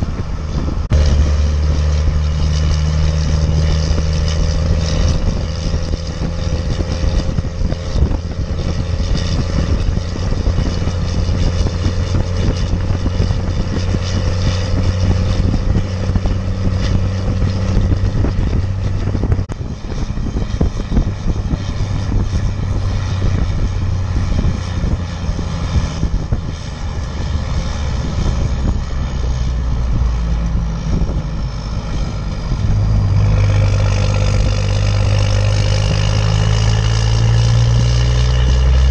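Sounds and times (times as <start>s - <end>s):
diesel engine droning under load: 0.0s - 38.9s.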